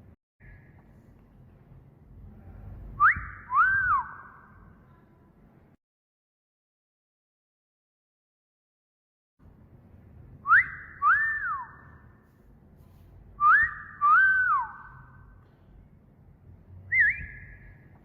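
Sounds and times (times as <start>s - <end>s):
wolf whistles: 3.0s - 4.5s, 10.5s - 11.9s, 13.4s - 15.1s, 16.9s - 17.8s.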